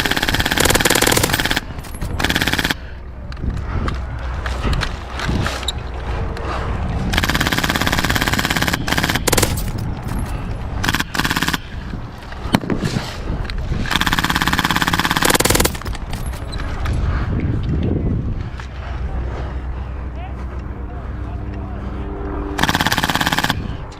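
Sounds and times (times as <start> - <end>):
airsoft guns firing full-auto: 0.0 - 2.8, 7.1 - 9.8, 10.8 - 11.6, 13.9 - 16.1, 22.6 - 23.6.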